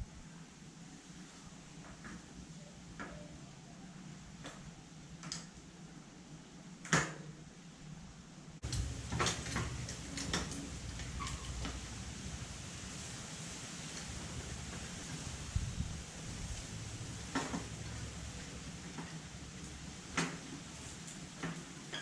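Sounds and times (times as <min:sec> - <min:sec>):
bicycle wheel clicks and knocks: 0:08.6 - 0:12.6
steady rushing noise: 0:08.6 - 0:21.4.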